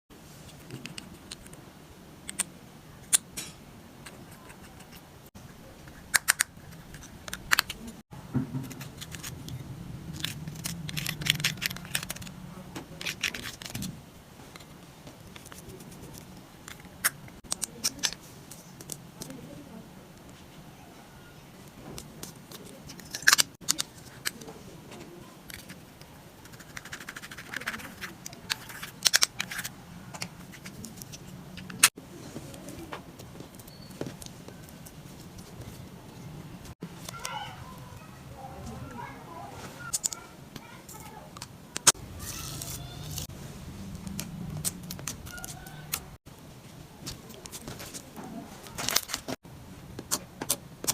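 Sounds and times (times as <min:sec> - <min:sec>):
sharp clicks and snaps: 0:05.9 - 0:07.9, 0:39.9 - 0:42.0, 0:43.9 - 0:46.2, 0:50.0 - 0:50.9.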